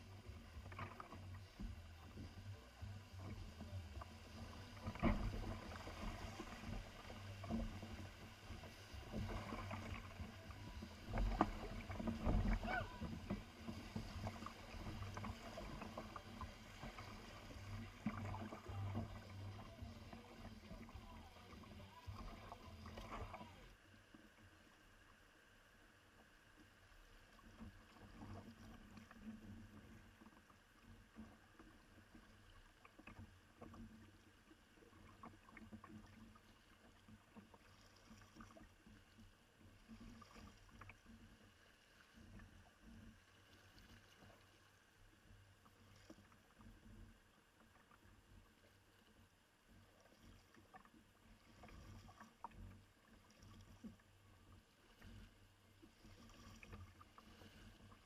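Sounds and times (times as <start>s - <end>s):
kayak paddle strokes: 0.0s - 24.3s
water splashes: 0.0s - 24.4s, 27.2s - 58.0s.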